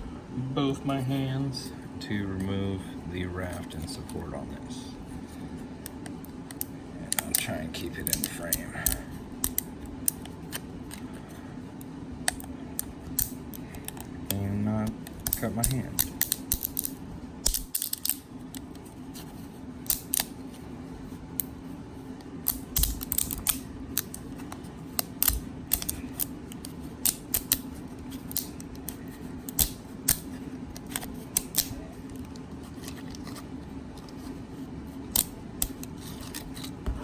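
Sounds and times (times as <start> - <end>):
steady low hum: 0.0 - 37.0
plastic clicking and snapping: 22.4 - 27.6, 28.3 - 32.4.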